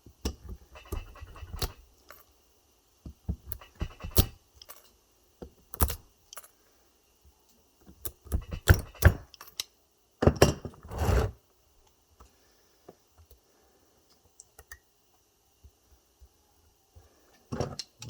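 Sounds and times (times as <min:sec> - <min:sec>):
pliers clicking and rattling: 0:00.4 - 0:02.3, 0:03.5 - 0:04.9, 0:05.7 - 0:06.5, 0:08.0 - 0:09.7.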